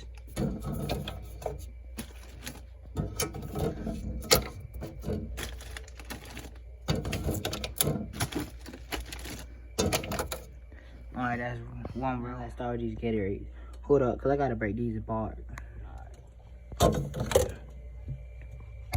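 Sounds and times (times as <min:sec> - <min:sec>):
plastic bottles clicking and knocking: 0:00.0 - 0:10.6, 0:16.8 - 0:17.7.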